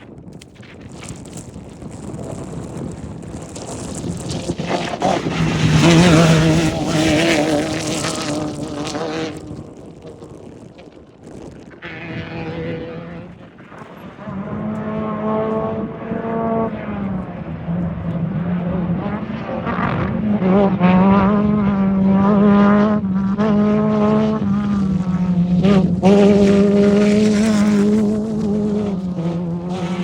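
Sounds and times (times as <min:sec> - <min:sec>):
race vehicle engine revving: 0:01.9 - 0:30.0.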